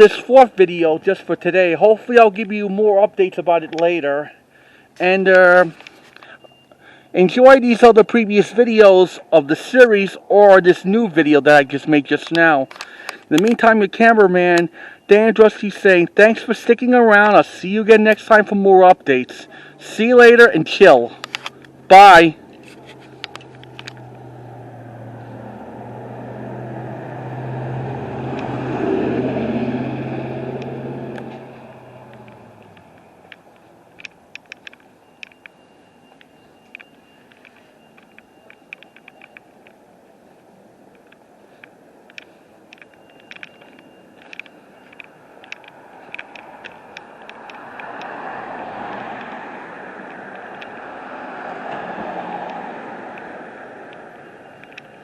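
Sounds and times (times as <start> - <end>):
vehicle passing on street: 0.0 - 55.0
vehicle passing by: 20.9 - 33.9, 44.3 - 55.0
low engine hum: 21.2 - 34.4.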